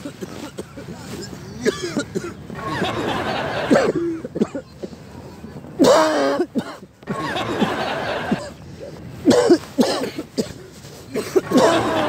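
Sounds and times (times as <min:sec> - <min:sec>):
man coughing hoarsely: 0:00.0 - 0:02.9, 0:03.7 - 0:05.0, 0:05.8 - 0:07.4, 0:09.2 - 0:12.0.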